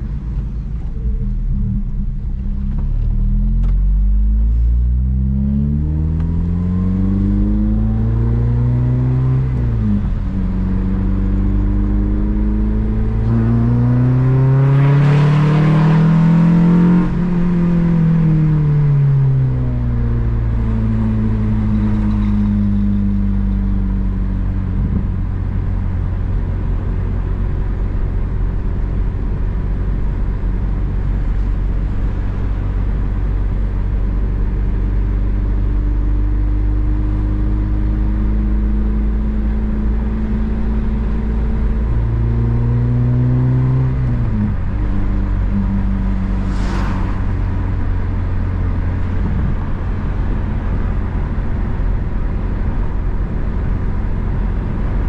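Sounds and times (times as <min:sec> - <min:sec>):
car engine accelerating: 0:00.0 - 0:55.0.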